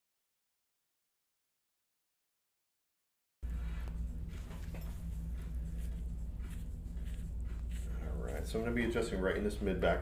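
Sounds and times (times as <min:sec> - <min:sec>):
low hum of room tone: 0:03.4 - 0:10.0.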